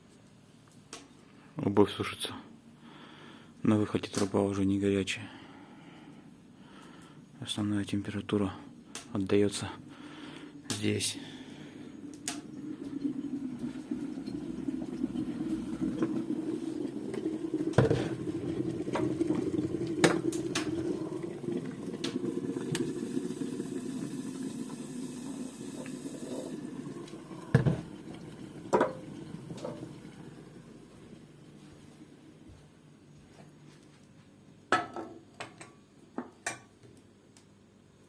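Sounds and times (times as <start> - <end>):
fire rushing in a stove: 12.0 - 31.4.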